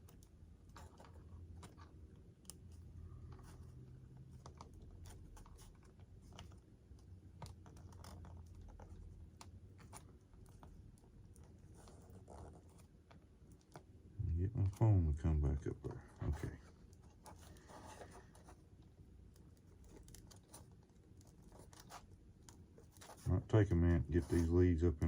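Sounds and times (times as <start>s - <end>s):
low steady hum: 0.0s - 25.0s
small clicks and scratches: 0.0s - 25.0s.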